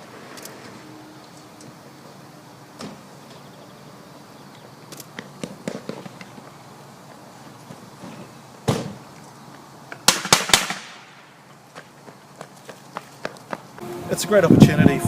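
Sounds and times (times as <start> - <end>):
rifle shots: 10.0 - 11.2.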